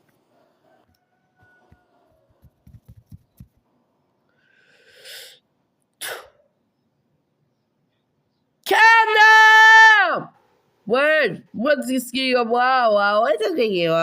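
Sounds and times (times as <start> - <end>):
person sneezing: 6.0 - 6.4.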